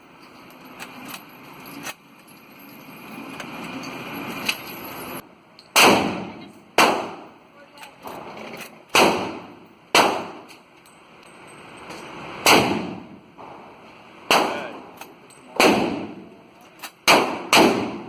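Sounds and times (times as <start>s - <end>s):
gunshots with echo: 15.6s - 16.3s, 17.1s - 18.0s.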